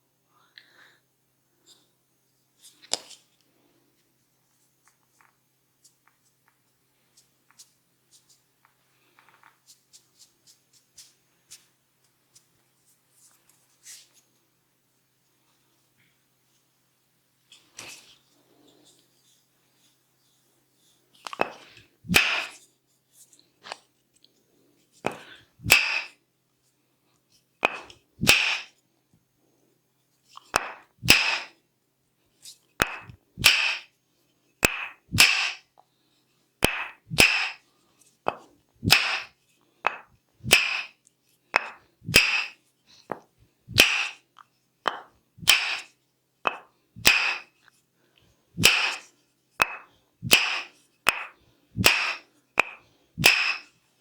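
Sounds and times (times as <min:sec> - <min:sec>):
percussive massage cracks: 0:21.2 - 0:22.6, 0:25.1 - 0:26.2, 0:27.6 - 0:28.8, 0:30.3 - 0:31.6, 0:32.8 - 0:33.9, 0:34.6 - 0:35.7, 0:36.6 - 0:37.6, 0:38.3 - 0:41.0, 0:41.6 - 0:44.2, 0:44.8 - 0:47.6, 0:48.6 - 0:53.7.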